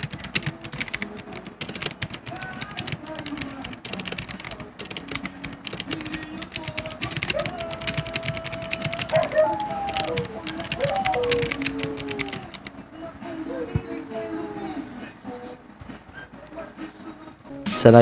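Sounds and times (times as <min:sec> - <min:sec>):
mechanical keyboard key clicks: 0:00.0 - 0:12.7
faint background music: 0:00.0 - 0:18.0.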